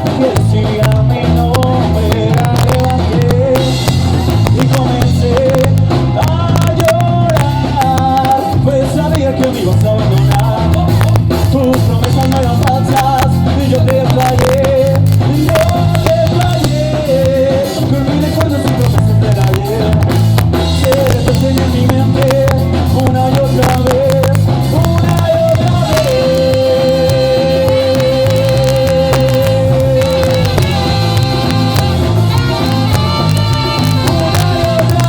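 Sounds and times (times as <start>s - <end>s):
bass and drum beat: 0.0s - 35.0s
live ska band playing: 0.0s - 35.0s
wavering lead melody: 24.8s - 35.0s.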